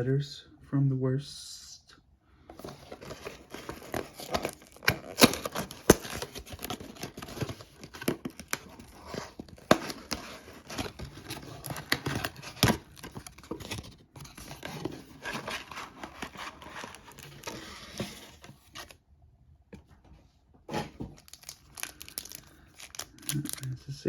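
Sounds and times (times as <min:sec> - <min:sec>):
cards sliding and rustling: 0:02.5 - 0:19.0.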